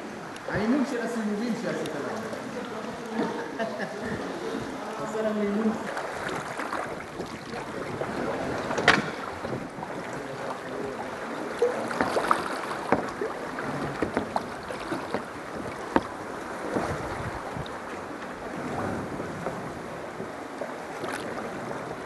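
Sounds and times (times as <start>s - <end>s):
water sloshing around kayak: 1.7s - 22.0s
wind on microphone: 3.9s - 22.0s
sharp splashes or knocks: 5.9s - 10.1s, 11.6s - 17.6s.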